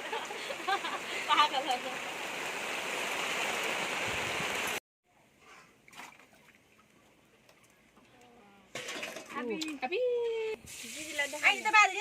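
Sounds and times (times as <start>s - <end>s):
frying in hot oil sizzle: 10.6s - 12.0s.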